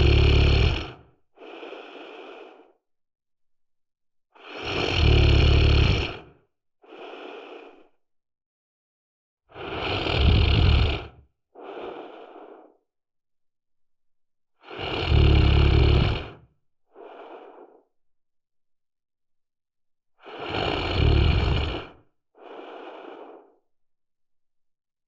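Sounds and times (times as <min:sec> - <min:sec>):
person snoring: 0:00.0 - 0:02.8, 0:04.4 - 0:06.3, 0:09.5 - 0:12.8, 0:14.6 - 0:16.4, 0:20.2 - 0:23.6
quiet breath: 0:00.0 - 0:02.9, 0:04.4 - 0:08.0, 0:10.4 - 0:12.9, 0:14.6 - 0:18.0, 0:20.2 - 0:23.7.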